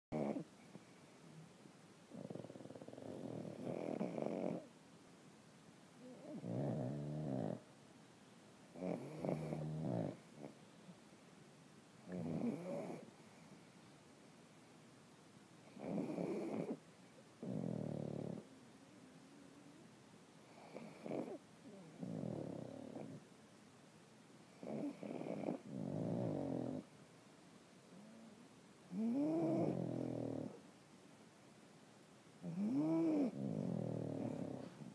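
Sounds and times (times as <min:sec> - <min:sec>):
dogs snoring: 0:00.1 - 0:00.9, 0:02.1 - 0:04.8, 0:06.0 - 0:07.7, 0:08.7 - 0:10.6, 0:12.0 - 0:13.5, 0:15.6 - 0:16.8, 0:17.4 - 0:18.6, 0:20.4 - 0:23.3, 0:24.5 - 0:26.9, 0:27.9 - 0:30.7, 0:32.4 - 0:34.9.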